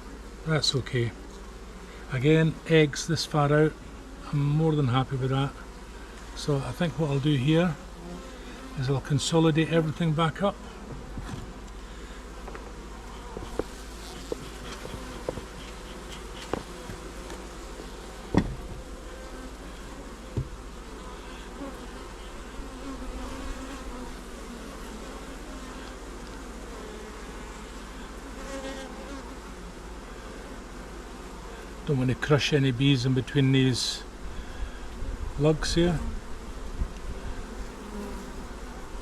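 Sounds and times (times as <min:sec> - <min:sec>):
honeybees humming: 0:00.0 - 0:39.0
wooden knocks of hive frames: 0:10.8 - 0:11.7, 0:12.4 - 0:19.1, 0:20.2 - 0:20.8.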